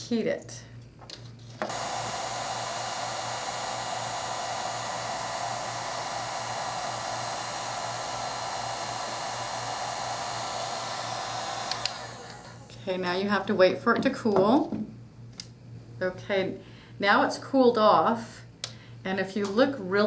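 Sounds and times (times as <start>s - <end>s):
heat gun blowing: 1.6s - 12.8s.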